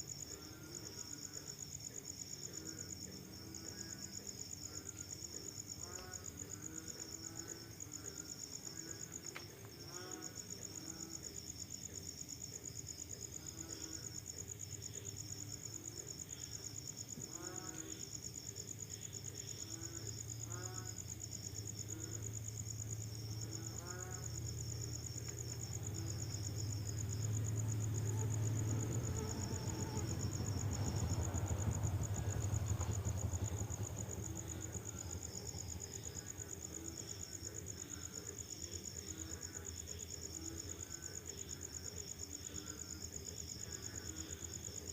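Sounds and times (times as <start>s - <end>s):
crickets chirping: 0.0s - 44.9s
frogs croaking: 0.0s - 44.9s
low rumble: 26.7s - 36.2s.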